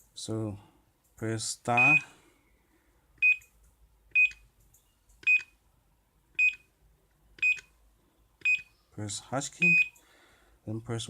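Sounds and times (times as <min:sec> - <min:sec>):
keypad beep with click: 0:03.2 - 0:03.5, 0:04.1 - 0:04.4, 0:05.2 - 0:05.5, 0:06.4 - 0:06.7, 0:07.4 - 0:07.7, 0:08.4 - 0:08.7.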